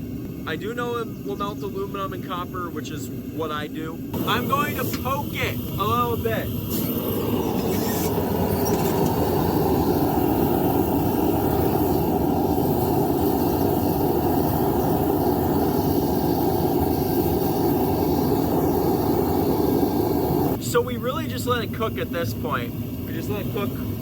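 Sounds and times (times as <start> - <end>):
furnace burner rushing: 4.1 - 20.6.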